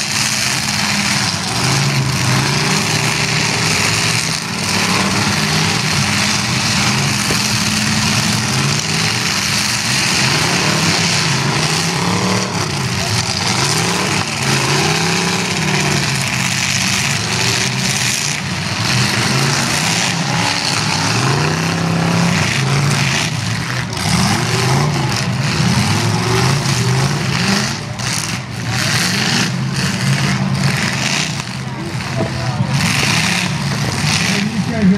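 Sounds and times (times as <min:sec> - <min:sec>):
car engines revving: 0:00.0 - 0:34.9
constant noisy wash: 0:30.0 - 0:34.9.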